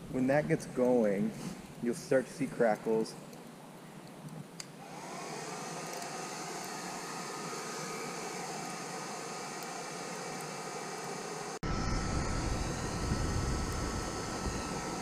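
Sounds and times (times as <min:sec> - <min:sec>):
hair dryer running: 0:04.8 - 0:15.0.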